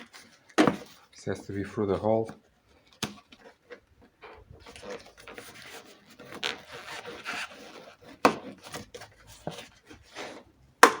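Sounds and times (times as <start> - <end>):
door parts scraping and rubbing: 3.4 - 10.7.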